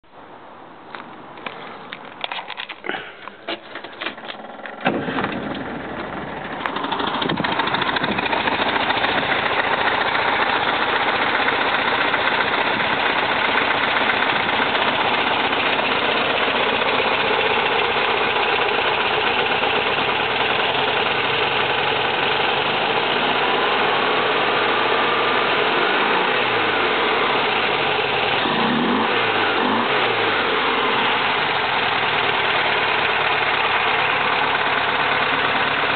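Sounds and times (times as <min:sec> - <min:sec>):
misfiring engine idling: 0:01.4 - 0:35.9
engine starting up: 0:02.5 - 0:09.5, 0:28.3 - 0:31.3.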